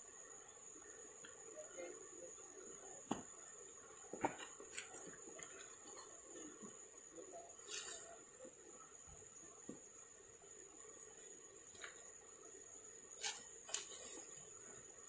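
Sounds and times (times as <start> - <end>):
insects shrilling: 7.4 - 9.0, 10.8 - 15.0.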